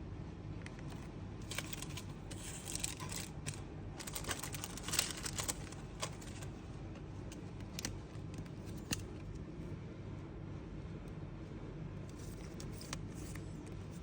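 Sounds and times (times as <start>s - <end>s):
low steady hum: 0.0s - 14.0s
cards clicking and rustling: 0.7s - 6.6s, 7.3s - 9.3s, 12.1s - 14.0s
foil wrappers crinkling: 1.4s - 6.6s.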